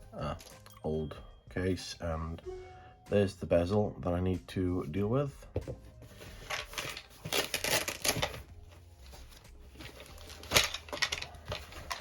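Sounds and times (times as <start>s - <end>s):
plastic parts clicking and scraping: 9.8s - 12.0s.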